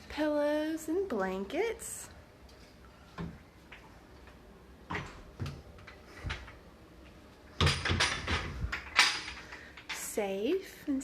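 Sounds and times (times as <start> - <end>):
closet doors knocking and clicking: 4.9 - 6.6, 7.5 - 9.4.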